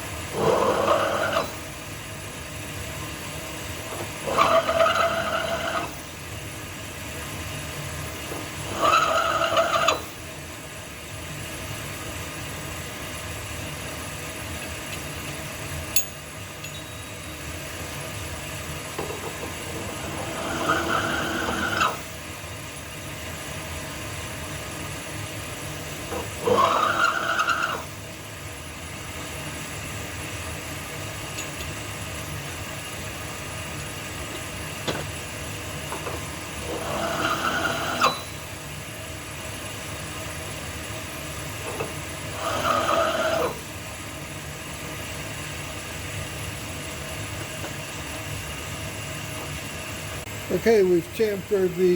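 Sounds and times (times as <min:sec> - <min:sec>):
low shop hum: 0:00.0 - 0:51.9
small power tool spinning: 0:00.3 - 0:01.6, 0:04.0 - 0:05.9, 0:08.4 - 0:10.2, 0:19.6 - 0:22.1, 0:26.1 - 0:28.0, 0:36.6 - 0:38.4, 0:41.6 - 0:43.6.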